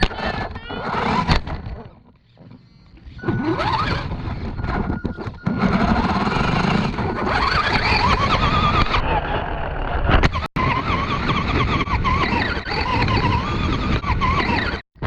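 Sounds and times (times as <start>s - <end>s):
electric motor whining: 0.0s - 14.8s
tyre and ground noise: 0.0s - 15.0s.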